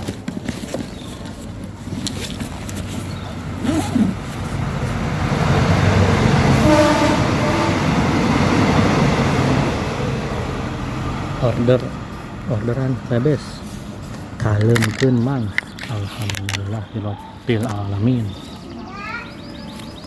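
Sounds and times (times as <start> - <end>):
large vehicle passing: 2.0 - 16.1
vehicle horn tone: 6.6 - 8.0.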